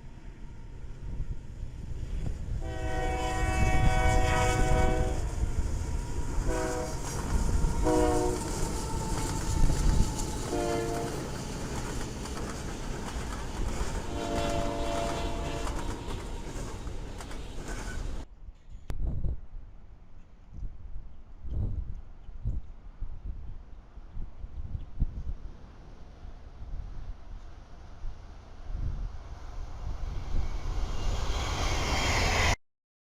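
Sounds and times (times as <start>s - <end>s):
moving train rumble: 0.0s - 32.6s
locomotive air horn blasts: 2.6s - 5.4s, 6.2s - 8.8s, 10.4s - 11.3s, 14.0s - 16.2s.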